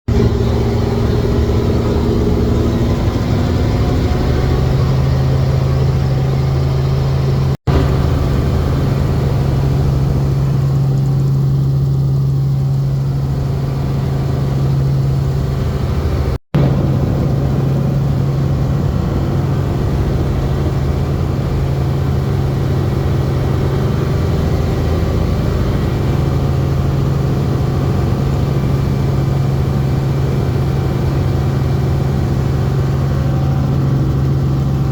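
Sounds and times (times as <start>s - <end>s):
helicopter drone from on board: 0.1s - 34.9s.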